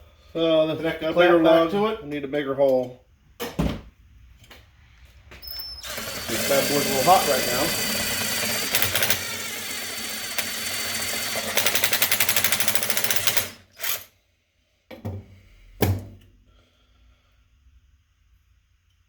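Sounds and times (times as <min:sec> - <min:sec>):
electric drill whirring: 0:05.8 - 0:14.1.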